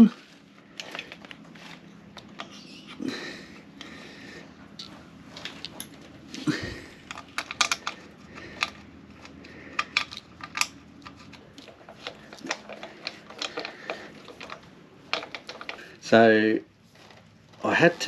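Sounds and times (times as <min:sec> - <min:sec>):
small parts clicking and tapping: 0:04.7 - 0:16.1.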